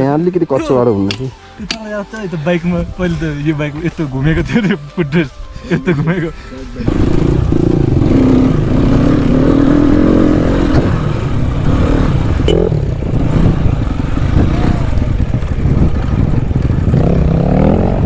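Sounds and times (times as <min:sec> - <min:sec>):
motorcycle engine revving: 0:06.8 - 0:18.0.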